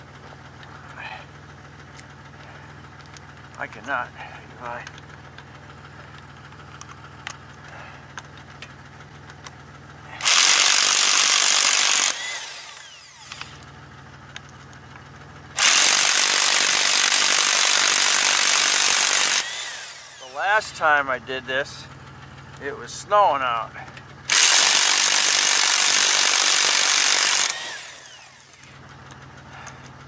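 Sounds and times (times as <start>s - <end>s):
car engine idling: 0.0s - 15.6s, 19.4s - 25.2s, 27.5s - 30.0s
electric impact wrench: 10.1s - 13.6s, 15.5s - 20.6s, 24.3s - 28.8s.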